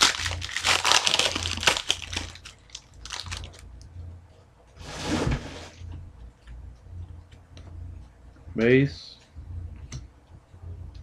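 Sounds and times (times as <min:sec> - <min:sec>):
wrapper crinkling: 0:00.0 - 0:03.6
low steady hum: 0:00.0 - 0:11.0.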